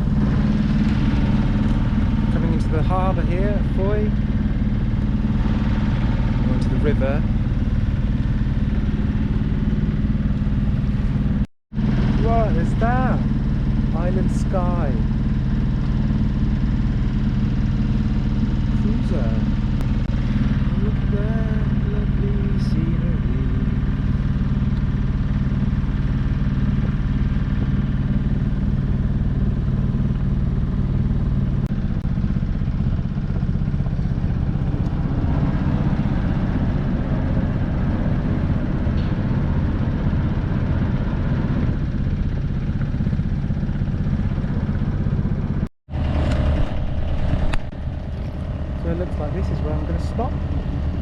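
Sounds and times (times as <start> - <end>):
boat engine running: 0.0 - 51.0.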